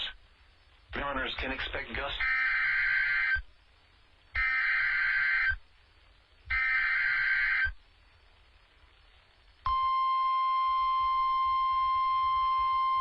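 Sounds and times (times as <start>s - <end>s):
two-tone data screeches: 2.1s - 3.5s, 4.4s - 5.6s, 6.5s - 7.8s
steady alarm tone: 2.2s - 3.4s, 4.4s - 5.6s, 6.5s - 7.8s.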